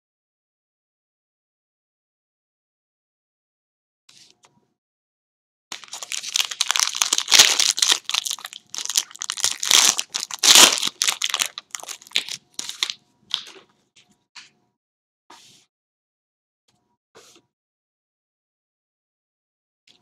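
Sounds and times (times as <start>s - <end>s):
plastic wrapping crinkling and tearing: 5.7s - 13.6s.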